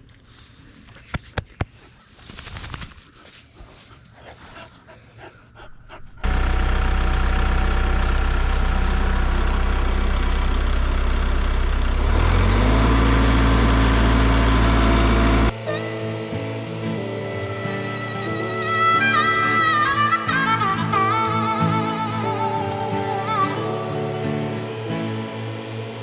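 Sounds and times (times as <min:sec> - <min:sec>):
faint outdoor sounds: 0:00.0 - 0:11.6, 0:15.5 - 0:26.0
tractor diesel engine running: 0:05.9 - 0:26.0.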